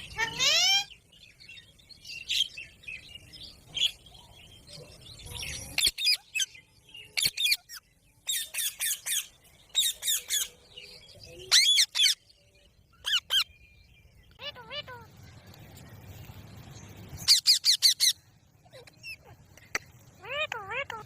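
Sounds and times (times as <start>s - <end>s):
parrot high-pitched calls: 0.1s - 0.9s, 11.5s - 12.2s, 13.0s - 13.5s, 14.3s - 15.1s, 17.2s - 19.4s, 20.2s - 21.0s
parrot chattering: 20.2s - 21.0s.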